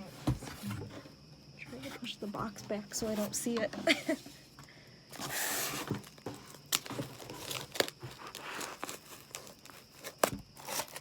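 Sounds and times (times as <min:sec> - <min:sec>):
paper and plastic crinkling: 0:05.1 - 0:11.0
packaging tearing: 0:06.5 - 0:11.0.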